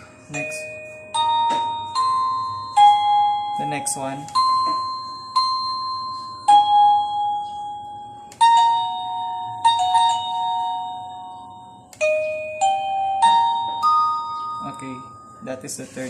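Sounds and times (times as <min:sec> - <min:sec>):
doorbell electronic chime notes: 0:00.0 - 0:15.5.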